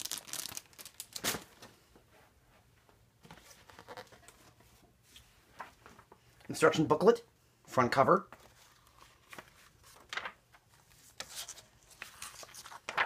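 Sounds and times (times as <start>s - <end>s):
plastic bags crinkling: 0.0s - 1.5s.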